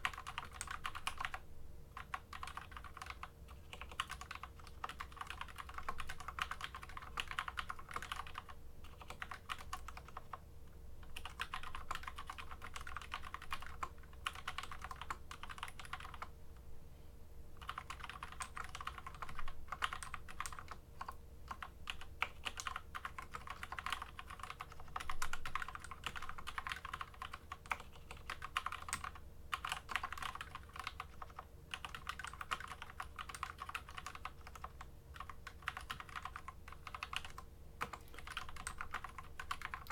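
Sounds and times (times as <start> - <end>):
mechanical keyboard typing: 0.0 - 10.4, 11.0 - 16.3, 17.6 - 39.9.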